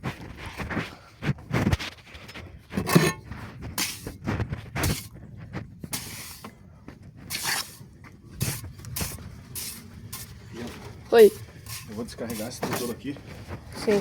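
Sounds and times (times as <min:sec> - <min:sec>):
clay bricks clattering: 0:02.7 - 0:04.2, 0:08.4 - 0:14.0.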